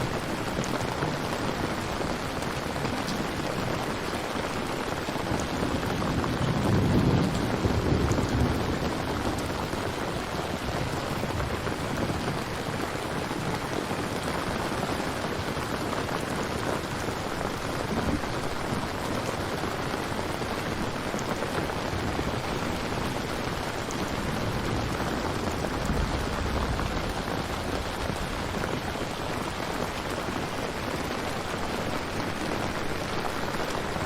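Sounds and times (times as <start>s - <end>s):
heavy rain: 0.0s - 34.0s
low thunder rumble: 5.4s - 12.6s, 21.7s - 29.8s.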